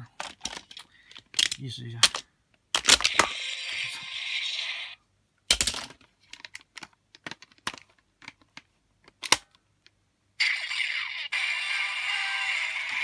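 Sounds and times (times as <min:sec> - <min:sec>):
toy electronic sound effect: 0:03.1 - 0:05.0, 0:10.4 - 0:13.0
plastic toy clicks: 0:10.4 - 0:13.0.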